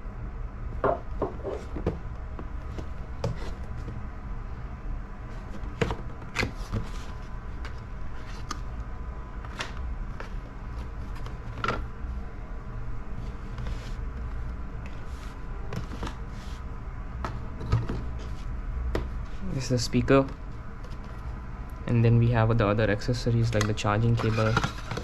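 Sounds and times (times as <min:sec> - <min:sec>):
low steady hum: 0:00.0 - 0:25.0.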